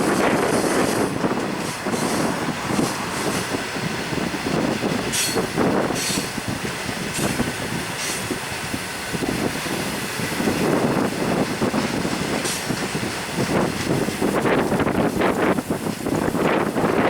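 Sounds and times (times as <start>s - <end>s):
train wagons rumbling on rails: 0.0s - 17.0s.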